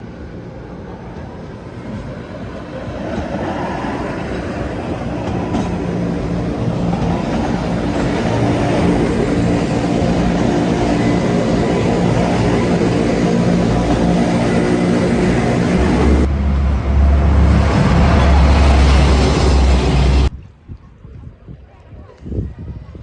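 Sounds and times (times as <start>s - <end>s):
large vehicle rumbling: 4.7s - 20.4s.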